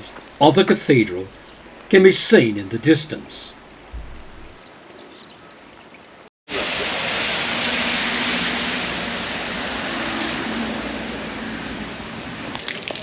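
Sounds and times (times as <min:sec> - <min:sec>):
heavy rain falling: 0:00.0 - 0:04.6
bird chirps: 0:00.0 - 0:06.2.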